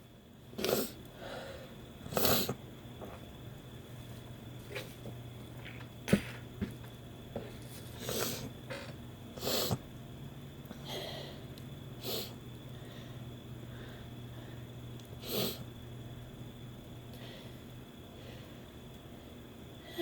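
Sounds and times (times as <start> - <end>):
woman sniffing through nose: 2.1 - 2.6, 9.4 - 9.8.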